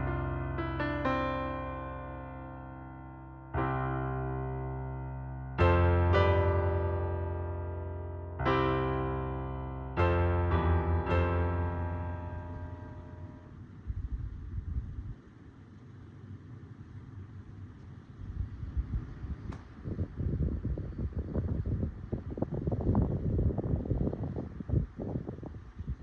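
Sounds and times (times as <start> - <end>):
slow electric piano chords: 0.0 - 13.5.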